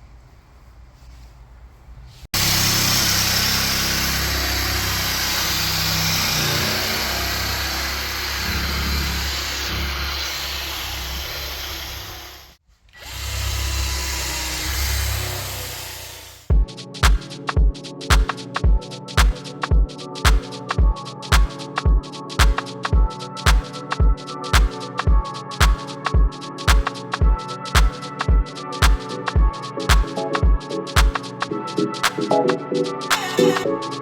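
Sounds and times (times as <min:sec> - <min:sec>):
electric power tool running: 0:02.4 - 0:16.5.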